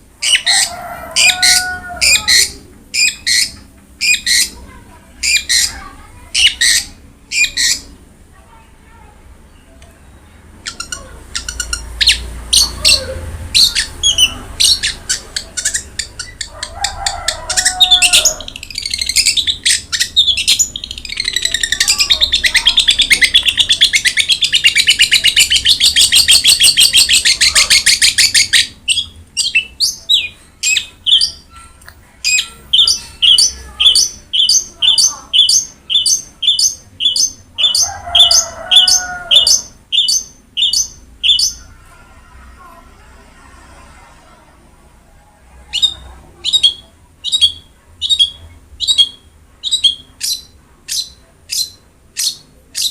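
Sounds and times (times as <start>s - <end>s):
shrike singing: 10.6s - 41.8s.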